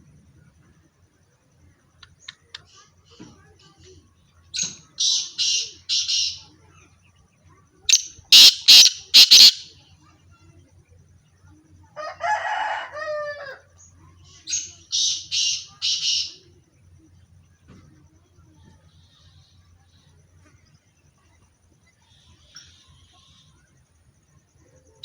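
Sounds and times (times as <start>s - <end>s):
harsh rasping bird calls: 7.9s - 9.7s
bird call of short falling notes: 8.4s - 9.6s.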